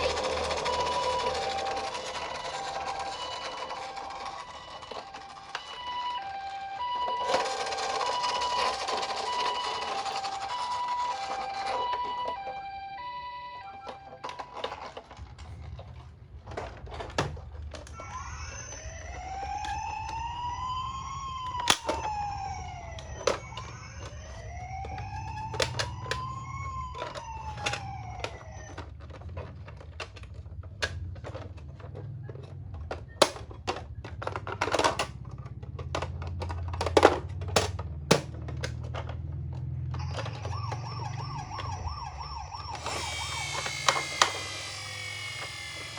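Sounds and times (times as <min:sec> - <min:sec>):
toy electronic siren wailing: 0:00.0 - 0:15.4, 0:17.8 - 0:29.8, 0:38.6 - 0:45.9
toy car rolling rumble: 0:00.0 - 0:45.9
plastic clicks and knocks: 0:21.5 - 0:42.0.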